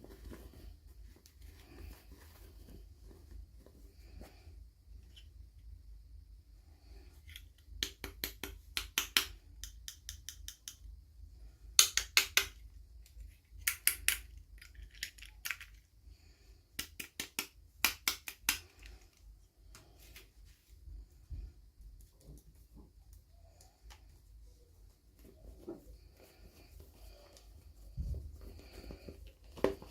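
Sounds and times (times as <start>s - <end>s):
plastic pieces clicking and crackling: 13.2s - 15.9s.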